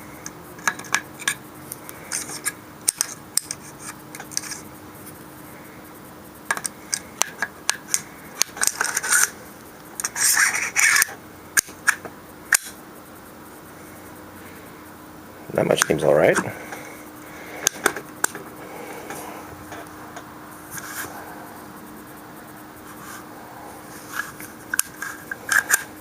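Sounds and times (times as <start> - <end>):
metal parts scraping: 2.0 - 4.6, 8.6 - 9.4, 10.0 - 11.2, 23.9 - 26.0.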